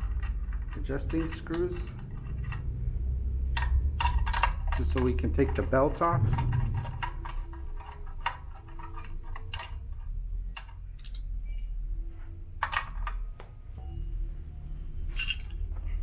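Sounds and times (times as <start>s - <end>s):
metal tools clicking: 0.0s - 2.8s.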